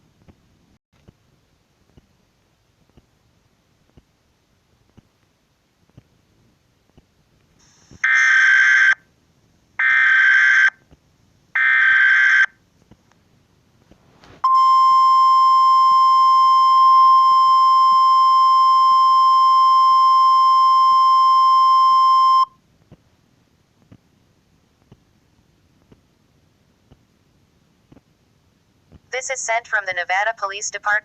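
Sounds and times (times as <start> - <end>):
loud attention tone: 14.4 - 22.5.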